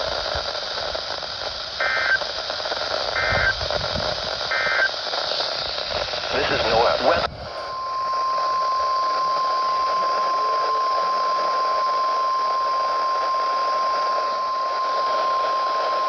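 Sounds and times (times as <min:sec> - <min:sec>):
static hiss: 0:00.0 - 0:16.0
steady high alarm tone: 0:06.6 - 0:16.0.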